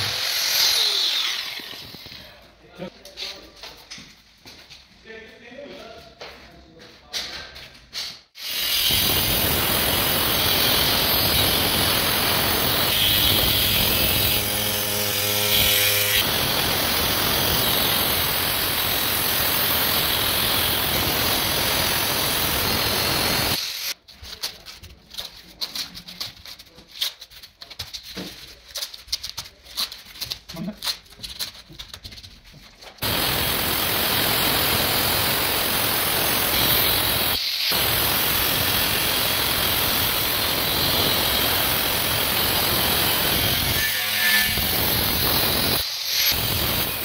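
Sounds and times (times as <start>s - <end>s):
power tool running: 8.4s - 24.0s, 33.0s - 47.0s.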